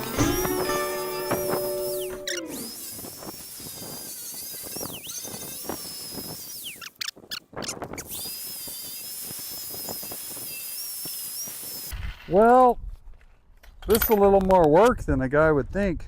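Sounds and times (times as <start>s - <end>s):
grinder whining on metal: 0.0s - 12.0s.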